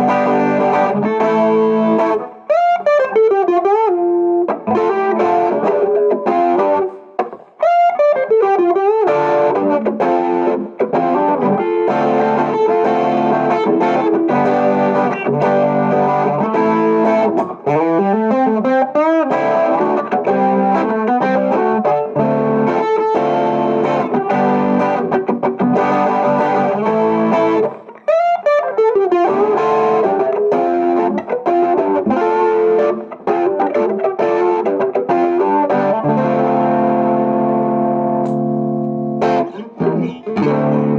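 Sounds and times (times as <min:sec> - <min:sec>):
distorted electric guitar: 0:00.0 - 0:40.9.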